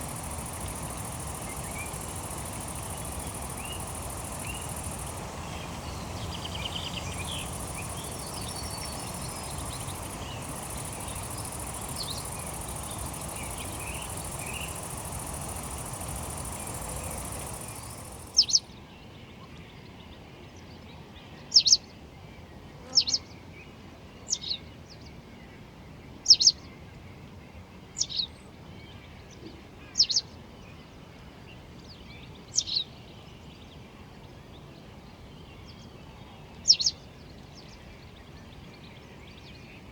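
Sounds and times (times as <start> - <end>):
bird chirps: 0.0 - 18.6
steady rushing hiss: 0.0 - 18.6.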